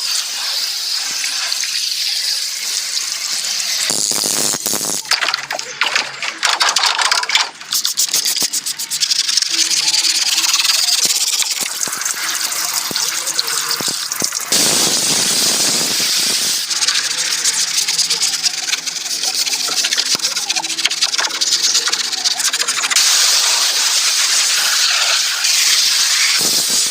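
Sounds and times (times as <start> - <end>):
pressure washer jet spraying: 0.0 - 5.2, 7.6 - 26.9.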